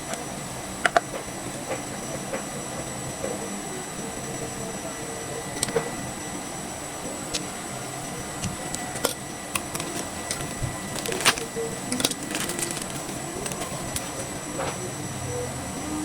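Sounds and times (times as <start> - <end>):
faint high whine: 0.0 - 16.0
metal parts clicking: 8.4 - 14.4.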